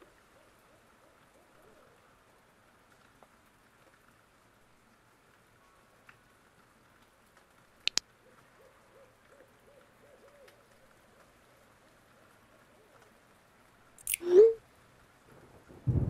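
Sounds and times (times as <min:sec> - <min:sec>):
faint wavering hoot-like tones: 0:00.0 - 0:02.1, 0:08.2 - 0:11.6.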